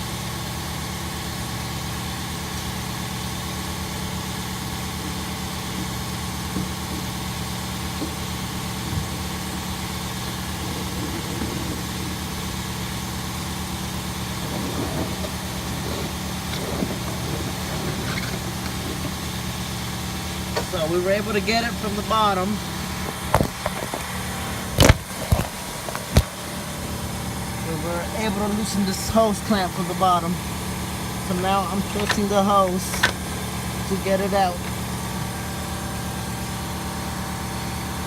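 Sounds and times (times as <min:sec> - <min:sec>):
steady mechanical drone: 0:00.0 - 0:38.0
hand tools scraping and clicking: 0:04.6 - 0:20.8, 0:31.7 - 0:33.3.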